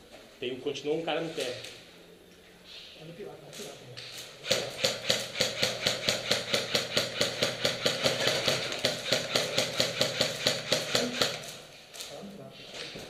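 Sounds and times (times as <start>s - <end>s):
airsoft rifle firing: 4.4s - 11.7s.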